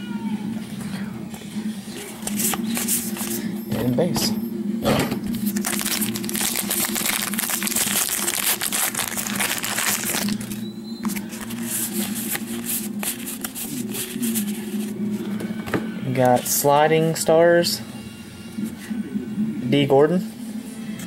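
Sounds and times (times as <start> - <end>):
plastic wrapper crinkling: 5.3 - 14.7.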